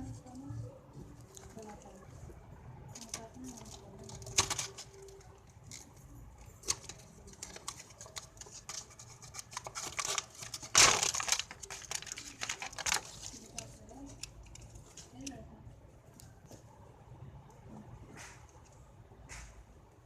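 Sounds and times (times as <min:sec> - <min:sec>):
plastic packaging clicks and rustles: 0:02.9 - 0:15.4
rustling scrape: 0:03.0 - 0:15.2.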